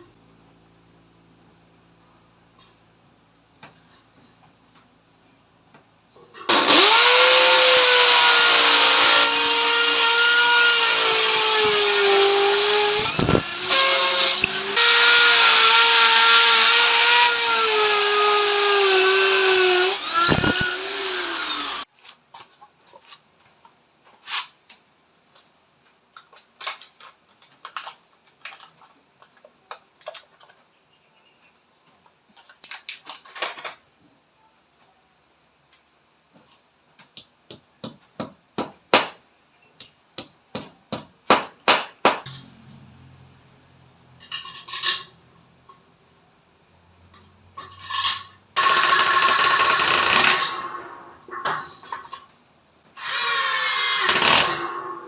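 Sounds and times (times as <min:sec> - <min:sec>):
power tool whining: 0:06.5 - 0:21.9.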